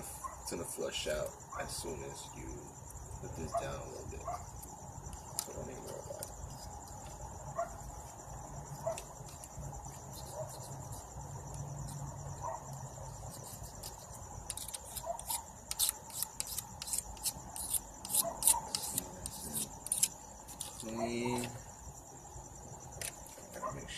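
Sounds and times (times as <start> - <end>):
crickets chirping: 0.0 - 23.9
blade scraping metal: 13.2 - 21.5.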